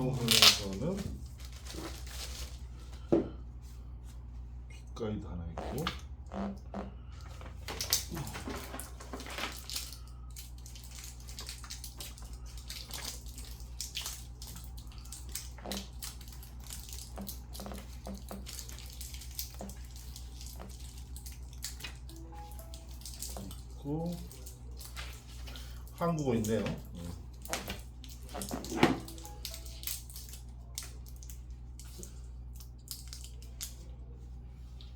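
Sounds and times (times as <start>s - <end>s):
packaging rustling and crinkling: 0.0s - 3.1s, 7.3s - 32.0s
steady low hum: 0.0s - 34.9s.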